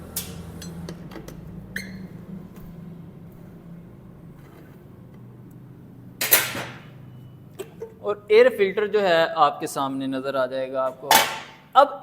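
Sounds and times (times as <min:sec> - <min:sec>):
steady low hum: 0:00.0 - 0:11.0
sharp metal clatter: 0:06.2 - 0:07.0.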